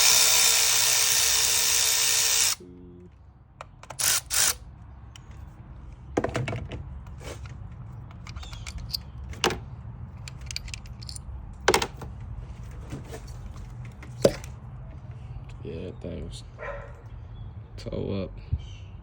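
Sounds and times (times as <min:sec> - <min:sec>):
metallic tool clicks and clinks: 0:08.1 - 0:09.0, 0:10.2 - 0:11.2.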